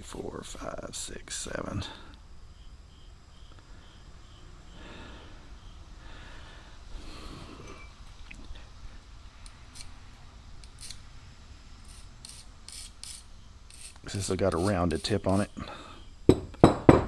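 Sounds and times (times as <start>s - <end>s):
steel blade hissing strokes: 9.4s - 11.0s, 11.8s - 16.0s.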